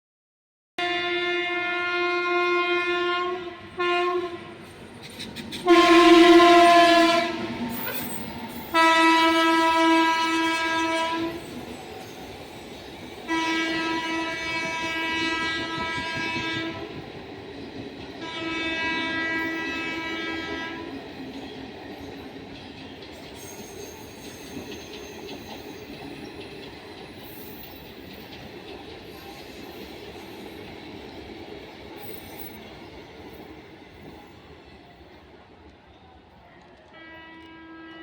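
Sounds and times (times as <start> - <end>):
locomotive horn blasts: 0.8 - 4.6, 5.6 - 7.6, 8.7 - 11.5, 13.3 - 16.9, 18.2 - 20.9, 36.9 - 38.0
passing train rumble and clatter: 0.8 - 38.0.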